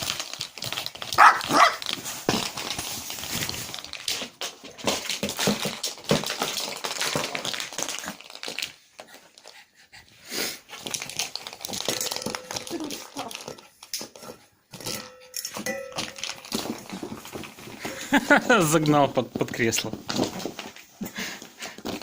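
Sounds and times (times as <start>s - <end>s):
scuffling and clicking: 0.7s - 7.6s
puppy yipping: 1.2s - 1.8s.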